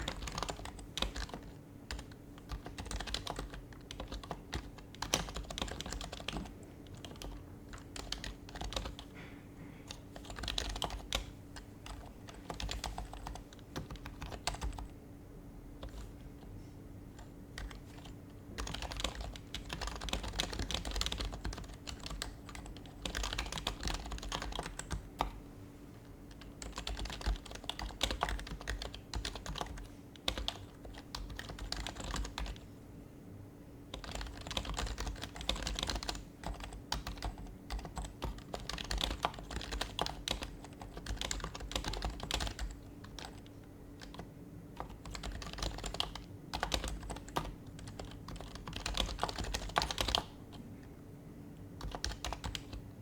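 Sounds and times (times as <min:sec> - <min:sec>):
soft muted keyboard typing: 0:00.0 - 0:15.0, 0:15.7 - 0:32.8, 0:33.8 - 0:53.0
faint steady hum: 0:00.0 - 0:53.0.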